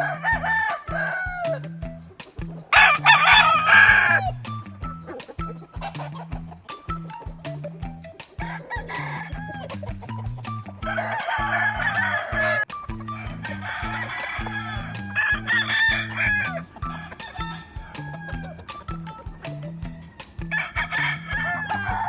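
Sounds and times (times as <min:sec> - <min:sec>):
background music with steady beat: 0:00.0 - 0:22.0
roosters clucking: 0:00.0 - 0:22.0
roosters crowing: 0:00.0 - 0:22.0.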